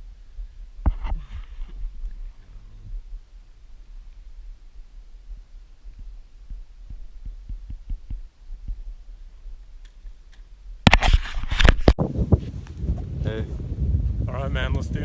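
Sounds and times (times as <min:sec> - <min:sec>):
low rumble on microphone: 0:00.0 - 0:09.6, 0:12.0 - 0:15.0
soft low thumps: 0:12.0 - 0:15.0.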